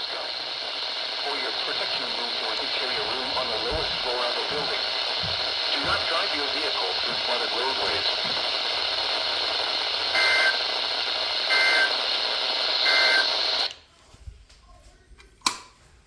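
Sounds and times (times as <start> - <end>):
radio static: 0.0 - 13.9.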